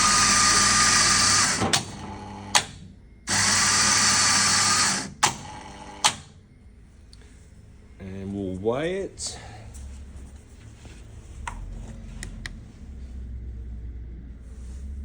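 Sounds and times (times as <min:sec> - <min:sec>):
coffee grinder whirring: 0:00.0 - 0:02.5, 0:03.3 - 0:05.2.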